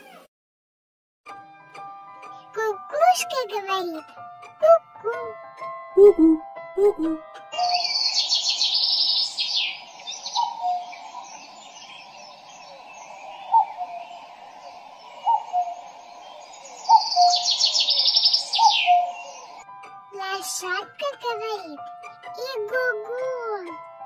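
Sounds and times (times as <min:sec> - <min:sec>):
cuckoo calling: 0:04.4 - 0:05.4, 0:06.0 - 0:20.8
songbirds trilling and chattering: 0:07.5 - 0:20.0.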